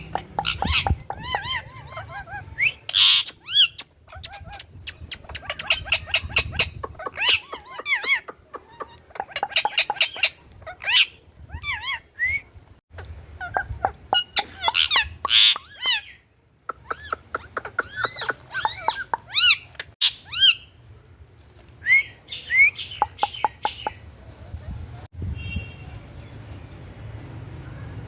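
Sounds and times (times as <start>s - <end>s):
parakeet chirping and calling: 0.0s - 12.1s, 13.0s - 20.8s, 22.3s - 24.1s.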